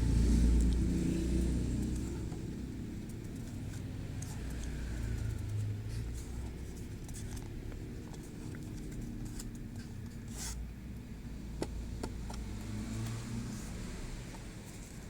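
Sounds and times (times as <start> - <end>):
steady low rumble: 0.0 - 15.0
card packaging scrapes and clicks: 6.2 - 10.6.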